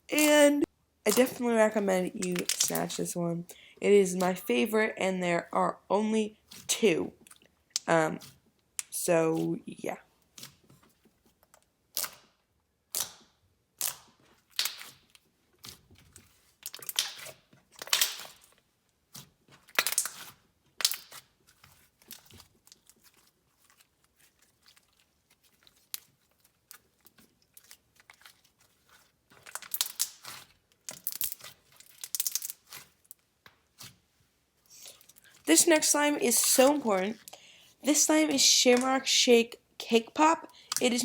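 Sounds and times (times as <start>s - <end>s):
slime squished by hand: 11.9s - 33.0s.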